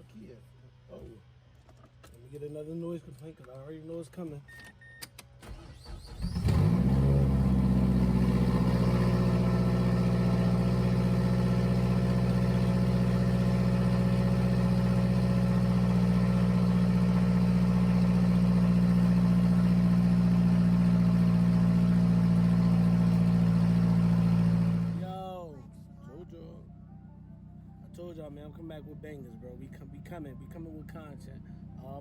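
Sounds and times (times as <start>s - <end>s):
car engine idling: 6.3s - 30.1s.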